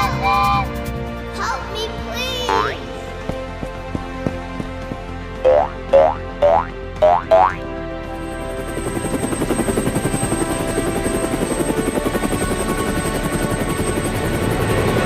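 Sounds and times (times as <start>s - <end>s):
helicopter rotor whir: 0.0s - 6.4s, 7.4s - 15.0s
background music: 0.0s - 15.0s.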